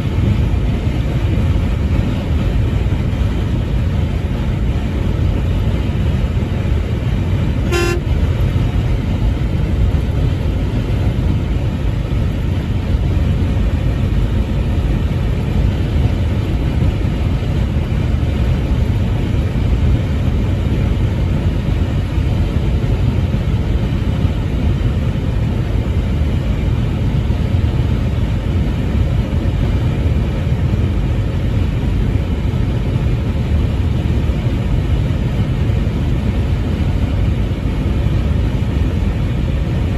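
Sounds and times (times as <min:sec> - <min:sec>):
truck driving rumble: 0:00.0 - 0:39.9
truck horn blast: 0:07.6 - 0:08.6.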